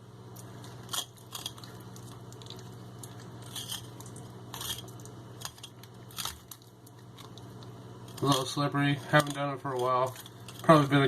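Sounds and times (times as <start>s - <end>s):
steady low hum: 0.0s - 11.0s
knife scraping fish bones: 4.5s - 6.6s.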